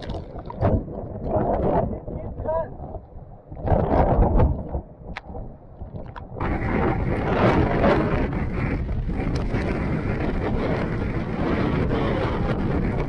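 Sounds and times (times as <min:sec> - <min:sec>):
wind gusts buffeting microphone: 0:00.0 - 0:13.0
rushing wind and driving rain: 0:06.0 - 0:13.0.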